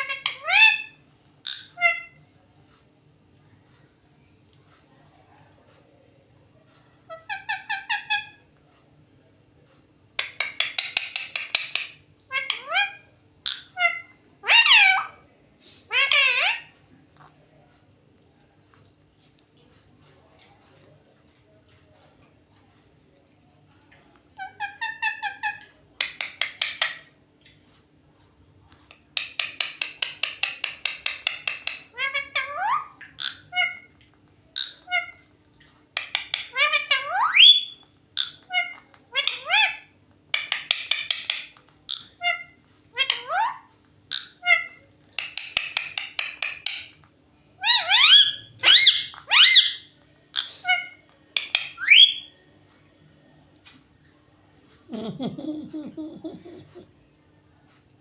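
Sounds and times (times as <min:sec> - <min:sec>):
parrot chirping and clicking: 0:00.0 - 0:02.2, 0:07.1 - 0:08.4, 0:10.1 - 0:15.2, 0:15.9 - 0:17.3, 0:23.8 - 0:27.8, 0:28.7 - 0:52.3.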